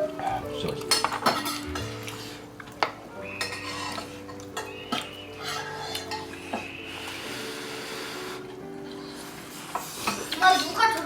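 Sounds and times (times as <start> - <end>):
cutlery clinking on dishes: 0.5 - 6.7, 9.7 - 11.0.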